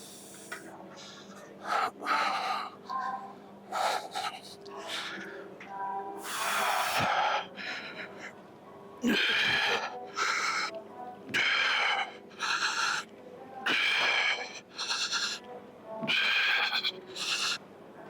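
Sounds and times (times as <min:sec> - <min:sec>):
man breathing hard: 0:11.4 - 0:13.1, 0:13.7 - 0:15.4, 0:16.1 - 0:17.6.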